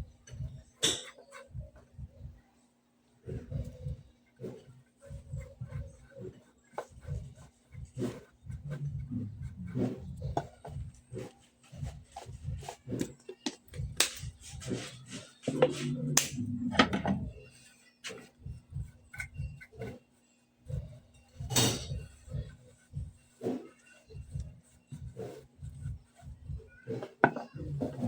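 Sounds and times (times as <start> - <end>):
hard objects knocking: 15.4 - 17.4, 26.9 - 28.0.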